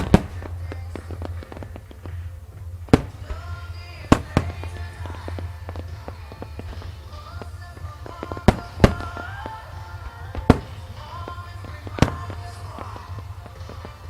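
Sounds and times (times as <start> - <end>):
firework pops and crackles: 0.0 - 14.0
firework shells booming: 0.0 - 14.0
music playing: 0.0 - 14.0.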